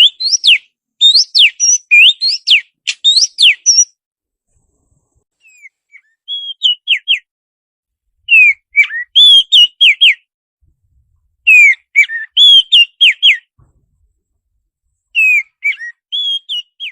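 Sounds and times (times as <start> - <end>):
songbird whistling song: 0.0 - 4.0, 5.4 - 7.3, 8.3 - 10.3, 11.4 - 13.6, 15.1 - 16.9.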